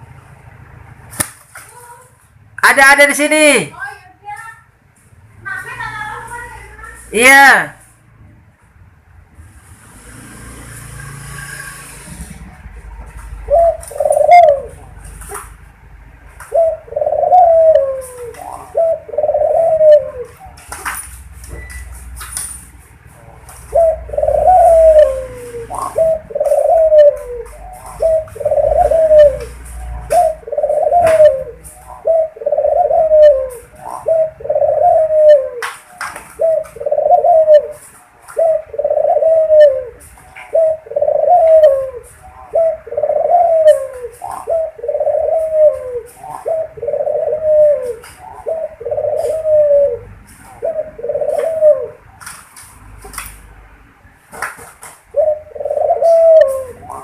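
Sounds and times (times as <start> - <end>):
dove cooing: 10.5 - 15.5, 16.4 - 20.8, 23.2 - 52.3, 55.1 - 57.0.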